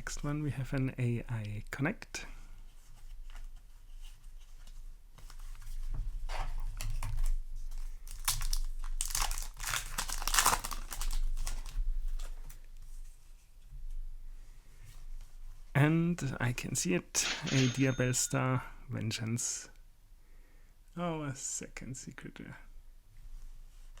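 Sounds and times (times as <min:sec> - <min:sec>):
foil wrapper crinkling and tearing: 0:06.8 - 0:12.4.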